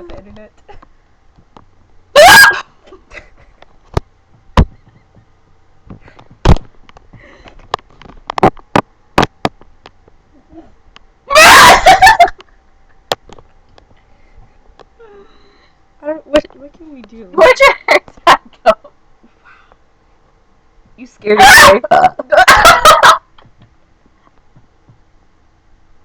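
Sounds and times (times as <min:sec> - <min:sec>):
loud yelping whoops: 0:02.1 - 0:02.8, 0:11.3 - 0:12.3.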